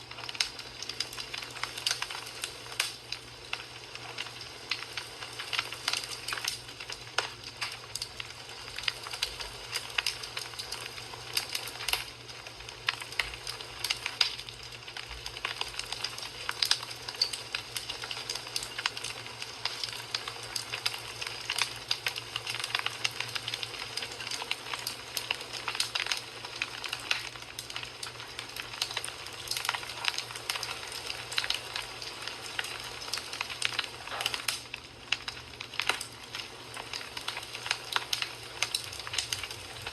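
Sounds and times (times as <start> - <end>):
wood fire crackling and popping: 0.0 - 39.9.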